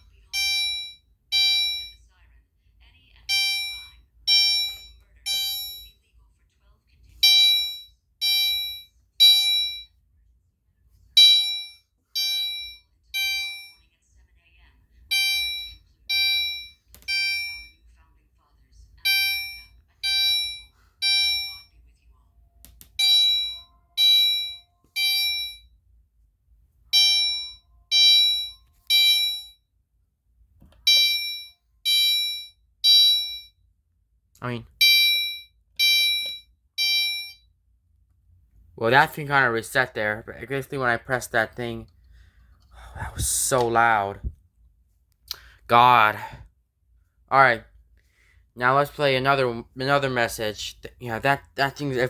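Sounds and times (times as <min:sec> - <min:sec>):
fire alarm horn: 0:15.1 - 0:17.7, 0:23.0 - 0:25.6, 0:26.9 - 0:29.6, 0:30.8 - 0:33.6, 0:34.8 - 0:37.4.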